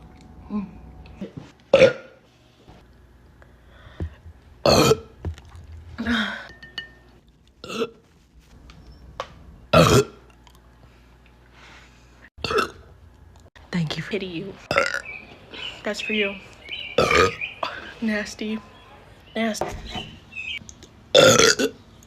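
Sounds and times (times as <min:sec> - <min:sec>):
woman burping loudly: 0:04.6 - 0:05.1, 0:09.7 - 0:10.2, 0:12.4 - 0:12.9, 0:14.7 - 0:15.1, 0:17.0 - 0:17.4, 0:21.1 - 0:21.8.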